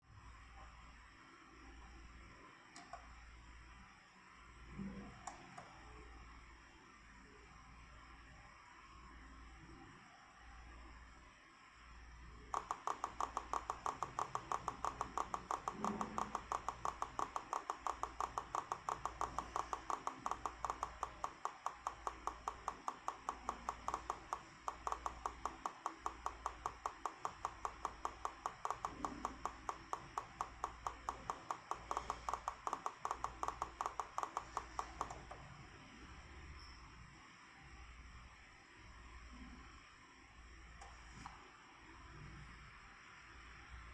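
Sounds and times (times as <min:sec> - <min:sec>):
monitor rapid ticking: 0:05.2 - 0:05.8, 0:12.5 - 0:35.6.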